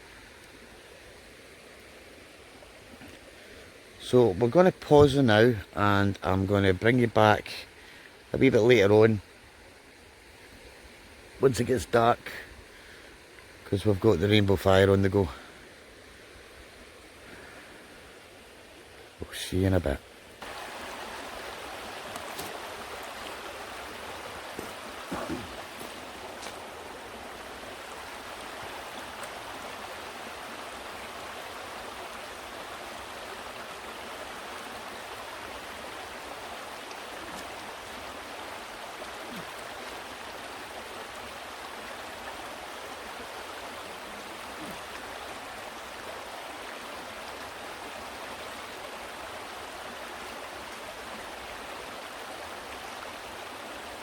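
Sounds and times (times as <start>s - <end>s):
rushing water of waterfall: 0.0s - 54.0s.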